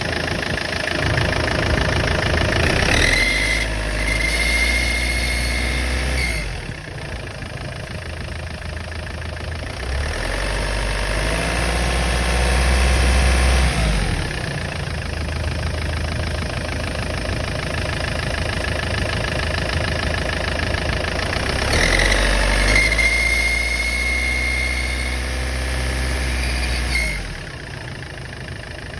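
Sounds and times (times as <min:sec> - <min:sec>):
turbocharged engine revving: 0:00.0 - 0:07.5, 0:09.6 - 0:15.0, 0:19.6 - 0:28.0.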